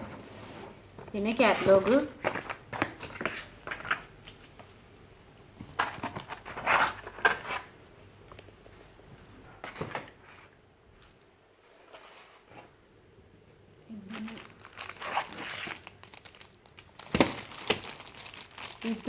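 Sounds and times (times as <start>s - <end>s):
packaging and paper rustling: 1.4s - 4.8s, 5.8s - 7.7s, 13.9s - 19.0s.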